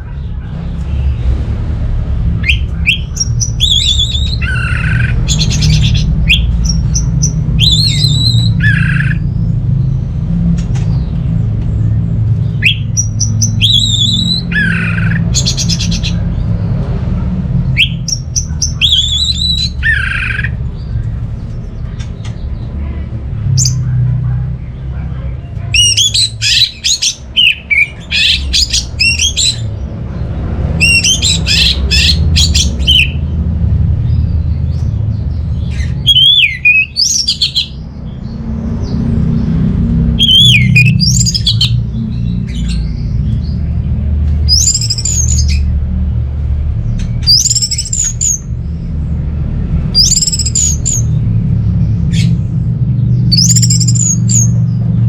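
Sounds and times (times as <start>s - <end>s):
thrush singing: 0.0s - 9.8s, 11.9s - 34.4s, 35.4s - 43.6s.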